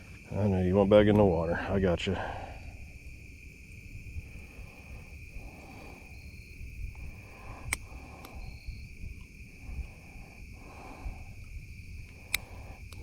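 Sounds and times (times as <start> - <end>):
insects droning: 0.0 - 13.0
sharp click: 7.6 - 8.4, 12.1 - 13.0.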